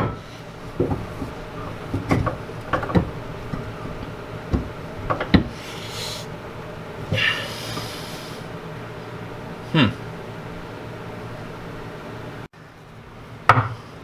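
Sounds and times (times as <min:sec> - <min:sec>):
metal knocks and clanks of tools: 0:00.0 - 0:05.6
short hissing rasping bursts: 0:05.6 - 0:06.3.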